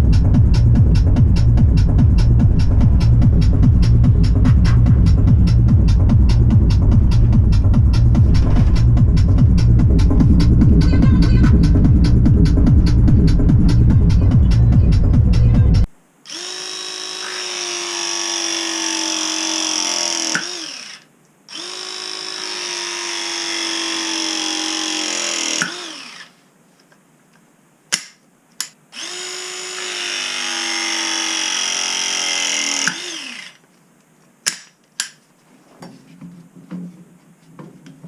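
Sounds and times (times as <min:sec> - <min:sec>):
crimping tool motor running: 0:16.3 - 0:26.3, 0:29.0 - 0:33.6.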